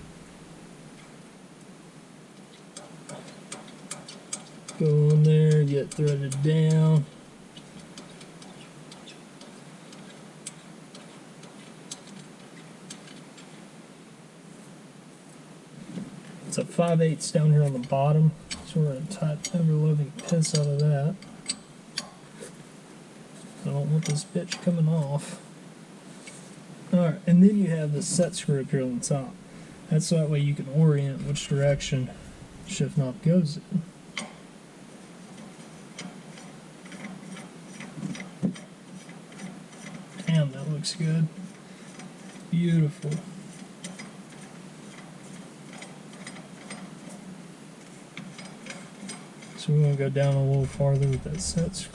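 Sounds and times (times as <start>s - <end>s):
metal parts clicking: 2.7s - 13.6s, 17.6s - 22.2s, 35.3s - 40.3s, 41.4s - 47.2s, 47.8s - 51.9s.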